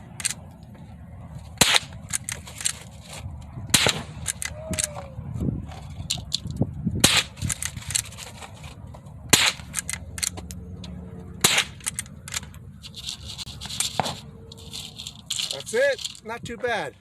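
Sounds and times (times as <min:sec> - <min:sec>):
rifle shots cracking: 0:01.6 - 0:02.4, 0:03.7 - 0:04.5, 0:07.0 - 0:08.0, 0:09.3 - 0:10.3, 0:11.4 - 0:12.4.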